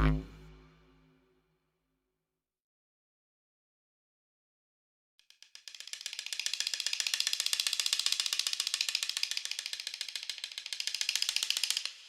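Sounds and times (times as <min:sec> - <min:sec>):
fast train of dry clicks: 0:05.2 - 0:12.0.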